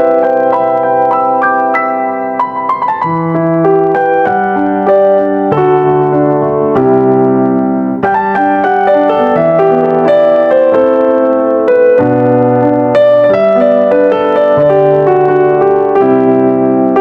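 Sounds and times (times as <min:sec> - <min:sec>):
piano music: 0:00.0 - 0:17.0.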